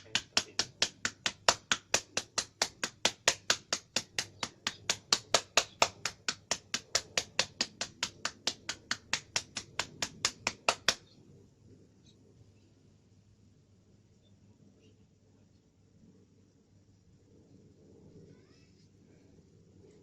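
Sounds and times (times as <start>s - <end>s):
rapid hand tapping: 0.0s - 11.0s.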